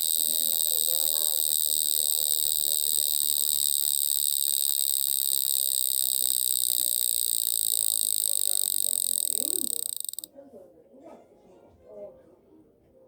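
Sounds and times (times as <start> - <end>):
cricket chirp alarm tone: 0.0 - 10.3.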